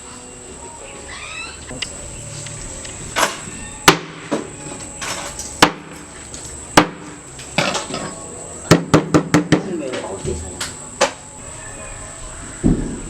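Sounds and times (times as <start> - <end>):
sharp hard knocks: 3.2 - 4.5, 6.8 - 7.2, 8.7 - 9.7.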